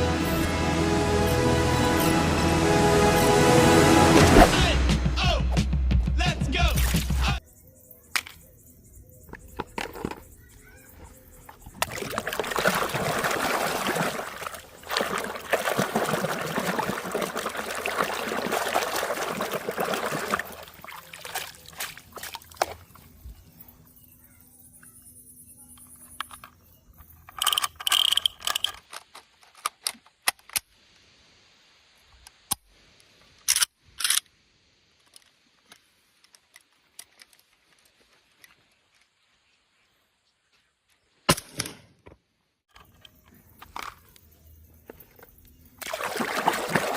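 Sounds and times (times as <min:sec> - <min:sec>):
plastic toys clicking and knocking: 0:09.3 - 0:10.4, 0:25.8 - 0:30.6
water running: 0:11.7 - 0:23.0, 0:45.8 - 0:46.9.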